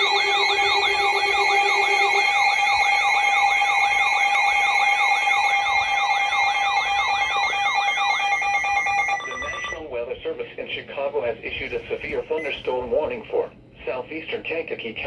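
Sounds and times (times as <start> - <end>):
electronic siren wail: 0.0 - 9.8
low pulsing beep: 0.0 - 9.8
steady alert tones: 0.0 - 9.8
warbling beep: 0.0 - 9.8.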